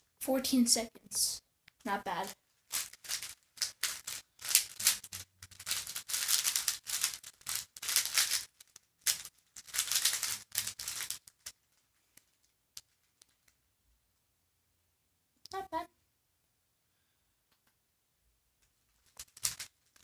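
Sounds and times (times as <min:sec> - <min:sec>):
puzzle cube plastic clicking: 0:03.1 - 0:11.6.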